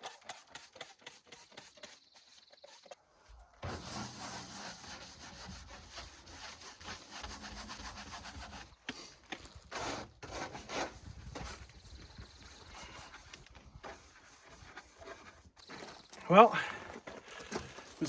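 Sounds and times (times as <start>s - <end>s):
scrub brush scrubbing: 3.7s - 8.7s.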